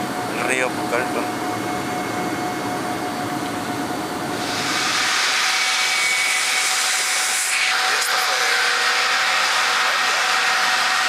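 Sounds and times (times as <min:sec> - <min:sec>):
faint steady whine: 0:00.0 - 0:06.0
airliner engine drone: 0:00.0 - 0:07.0
loud rushing hiss: 0:04.3 - 0:10.8.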